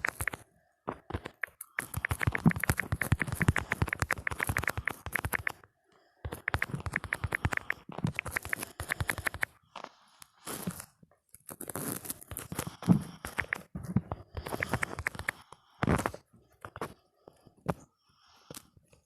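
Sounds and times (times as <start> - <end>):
phone keyboard typing clicks: 0.0 - 0.4, 1.1 - 5.6, 6.3 - 9.5, 13.2 - 13.8, 14.4 - 15.4.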